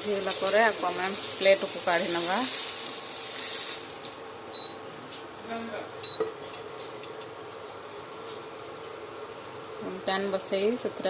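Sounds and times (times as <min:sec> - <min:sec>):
oil sizzling: 0:00.0 - 0:04.5.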